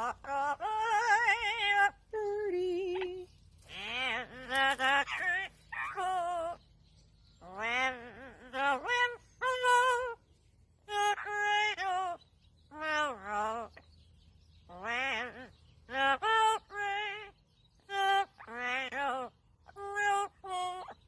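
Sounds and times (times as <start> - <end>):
parrot wavering calls: 3.7 - 6.6, 7.4 - 10.2, 10.8 - 13.8, 14.7 - 21.0.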